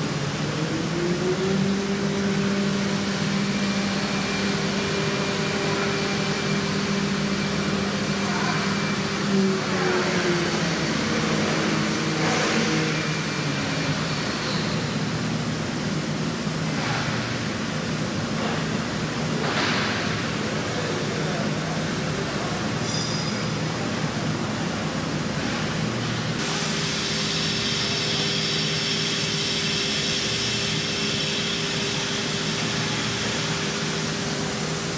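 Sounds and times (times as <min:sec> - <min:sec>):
steady machine hum: 0:00.0 - 0:34.9.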